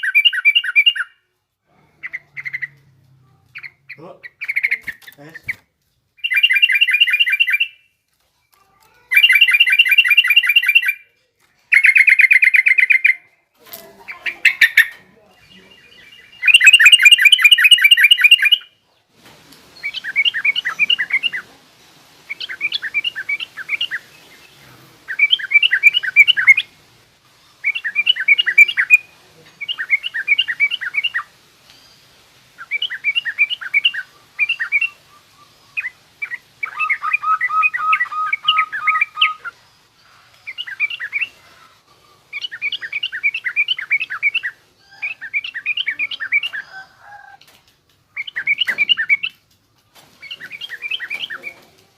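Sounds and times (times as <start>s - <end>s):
bird harsh chattering call: 3.6s - 5.6s, 6.2s - 7.8s, 9.1s - 11.0s, 11.7s - 13.2s, 14.1s - 18.7s, 25.1s - 26.7s, 32.6s - 39.6s
lower bird trill: 6.2s - 8.0s, 9.1s - 11.1s, 14.1s - 18.8s, 27.5s - 47.4s.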